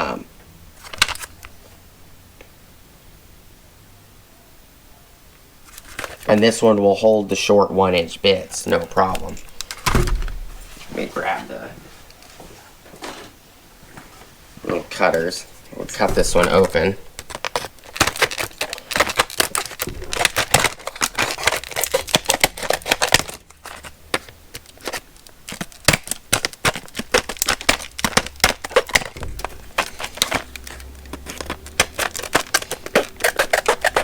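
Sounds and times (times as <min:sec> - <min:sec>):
plastic clicking and crackling: 0:00.8 - 0:01.6, 0:08.5 - 0:10.3, 0:15.9 - 0:34.0
cutters snipping plastic packaging: 0:15.9 - 0:34.0.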